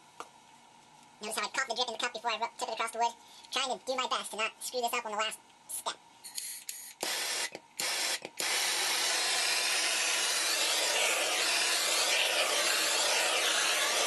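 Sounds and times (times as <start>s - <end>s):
propane torch hissing: 8.5s - 14.0s.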